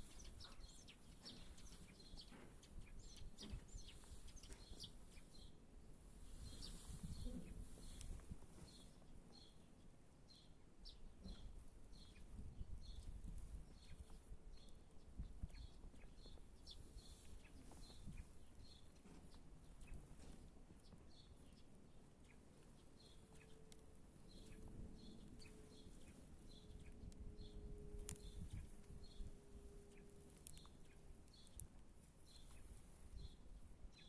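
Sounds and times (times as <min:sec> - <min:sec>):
low outdoor rumble: 0:19.5 - 0:33.8.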